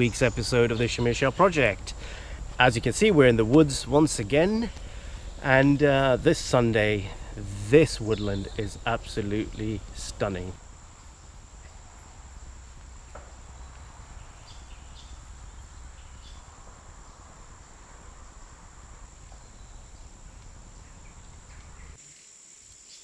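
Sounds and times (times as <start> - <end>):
low steady rumble: 0.0 - 22.0
faint ticks: 20.2 - 22.0.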